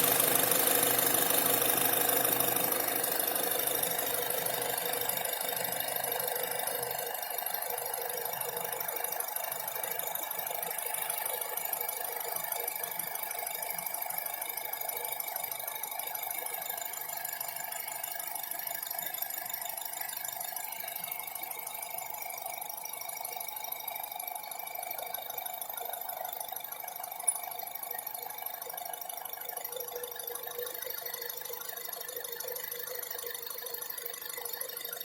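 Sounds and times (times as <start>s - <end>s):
car engine running: 0.0s - 5.0s
engine ticking and rattling: 0.0s - 20.0s.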